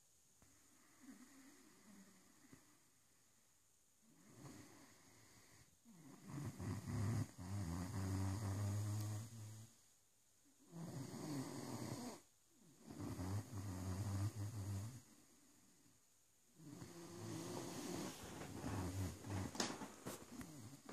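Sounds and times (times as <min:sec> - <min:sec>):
dog snoring: 0:00.8 - 0:02.6, 0:04.1 - 0:09.7, 0:10.7 - 0:15.2, 0:16.6 - 0:20.9.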